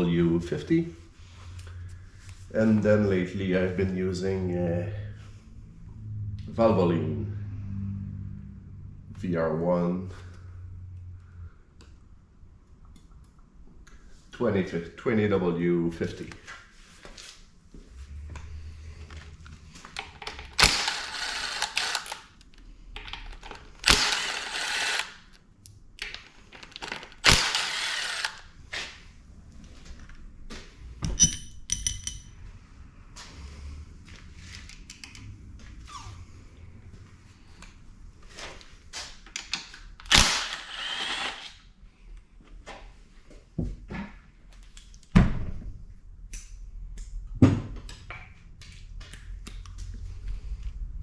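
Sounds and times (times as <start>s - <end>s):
power tool bursts: 20.6s - 22.2s, 23.8s - 25.2s, 27.2s - 28.4s, 40.1s - 41.6s
metal parts clinking: 31.0s - 32.4s.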